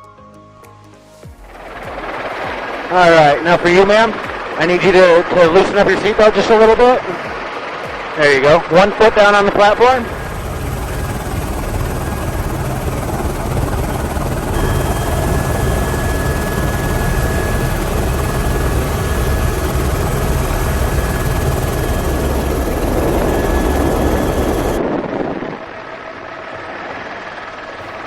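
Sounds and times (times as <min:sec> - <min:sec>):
helicopter rotor and engine: 0:01.4 - 0:28.0
thin steady whine: 0:09.6 - 0:24.8.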